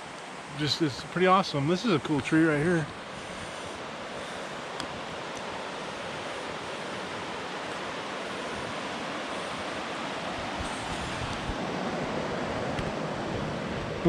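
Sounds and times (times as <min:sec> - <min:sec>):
water rushing over rapids: 0:00.0 - 0:14.0.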